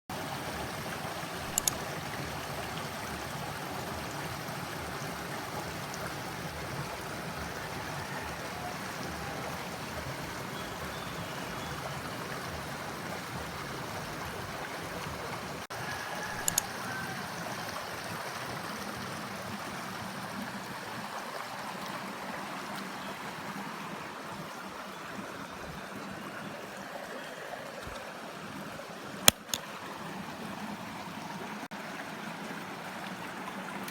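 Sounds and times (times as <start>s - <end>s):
running water: 0.1s - 33.9s
sharp clicks: 1.5s - 1.8s, 16.3s - 16.7s, 29.3s - 29.7s.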